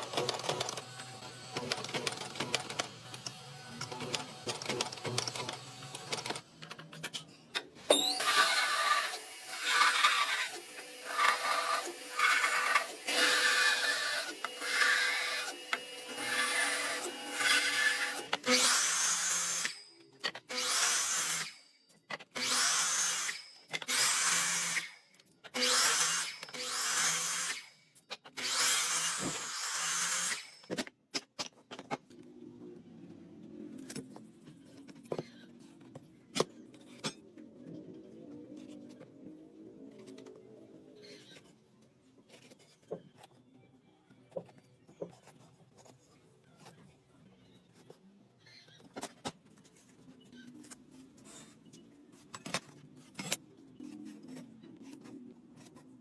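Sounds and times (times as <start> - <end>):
power tool working wood: 8.2 - 19.7.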